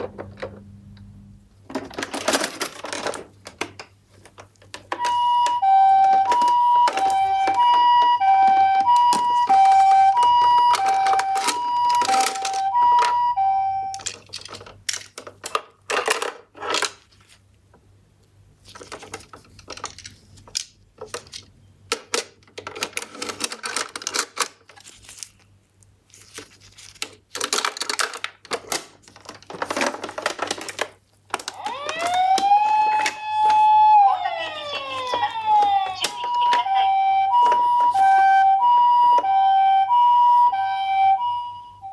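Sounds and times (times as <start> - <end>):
toy cars clattering: 1.7 - 5.2, 6.0 - 13.2, 14.0 - 17.1, 18.7 - 24.8, 26.3 - 33.6
toy electronic siren wailing: 5.0 - 14.0, 31.5 - 41.9.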